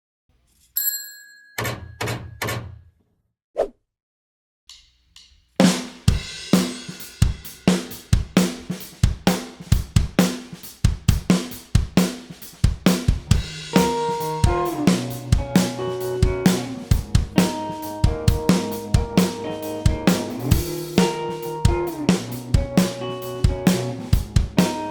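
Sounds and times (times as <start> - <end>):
drum kit beat: 5.3 - 24.9
bass and electric guitar: 13.4 - 24.9.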